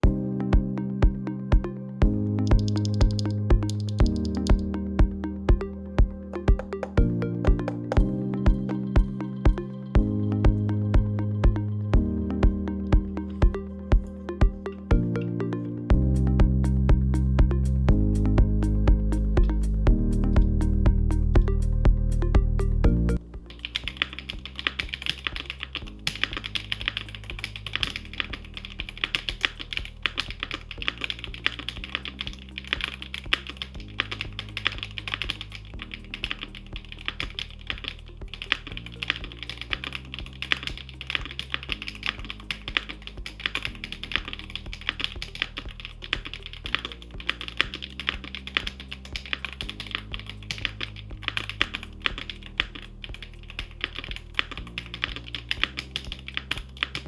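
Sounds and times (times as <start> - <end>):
soft background music: 0.0 - 57.0
mechanical keyboard typing: 2.5 - 4.7, 6.4 - 8.9, 23.5 - 57.0.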